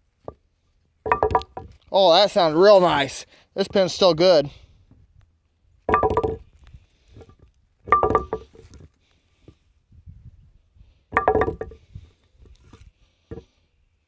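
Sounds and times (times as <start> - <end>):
bowling pin knocks and ring: 1.1 - 1.7, 5.9 - 6.4, 7.9 - 8.5, 11.2 - 11.8.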